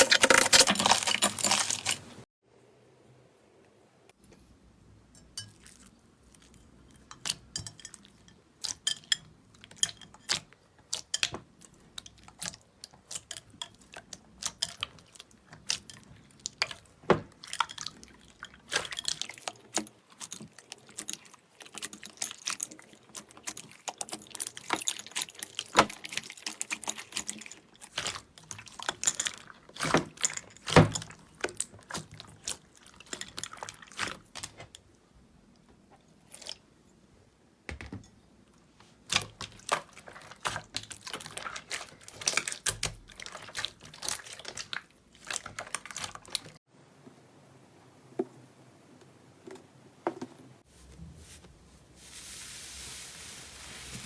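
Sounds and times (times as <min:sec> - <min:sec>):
slime squelching by hand: 0:39.1 - 0:46.6.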